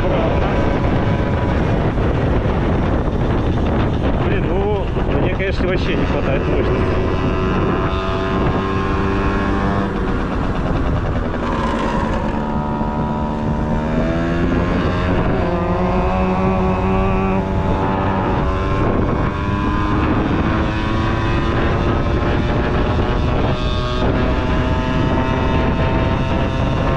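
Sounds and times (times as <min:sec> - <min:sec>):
moped engine running: 0:00.0 - 0:26.9
wind on microphone: 0:00.0 - 0:26.9.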